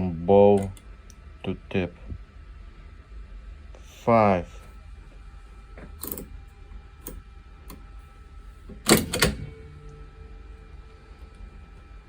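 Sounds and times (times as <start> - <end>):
lever clunking: 8.7 - 10.0
key punch machine clicking: 8.8 - 9.7.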